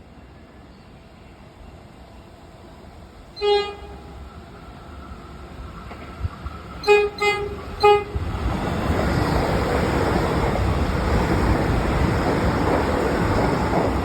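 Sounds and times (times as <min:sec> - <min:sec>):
train rushing through station: 0:00.0 - 0:14.0
train horn blasts: 0:03.4 - 0:04.2, 0:06.8 - 0:08.3.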